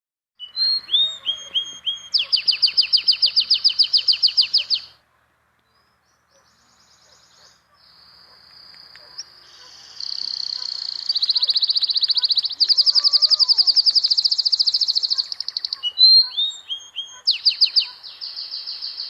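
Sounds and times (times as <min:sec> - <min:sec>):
buzzy bird trilling calls: 0:00.4 - 0:05.0, 0:09.2 - 0:19.0
songbirds singing: 0:00.4 - 0:19.0.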